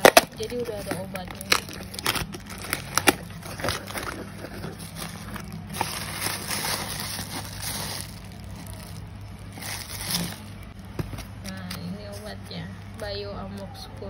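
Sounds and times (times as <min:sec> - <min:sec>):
packaging clicks and snaps: 0:00.0 - 0:11.8
packaging rustling: 0:00.0 - 0:11.8
steady low hum: 0:00.0 - 0:14.0.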